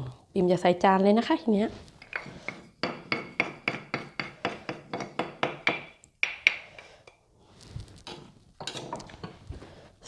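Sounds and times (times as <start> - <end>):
spoon scraping a mortar: 1.8 - 5.7, 6.5 - 9.5.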